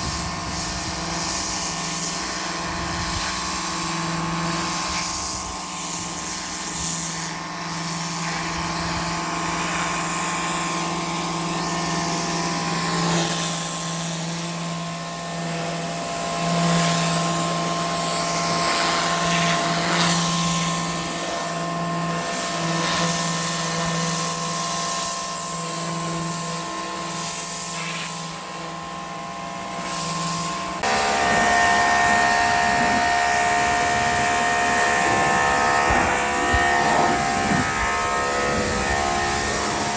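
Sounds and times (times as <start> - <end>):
pressure washer motor whine: 0.0 - 39.9
water spray hiss: 26.5 - 28.5, 29.8 - 39.9.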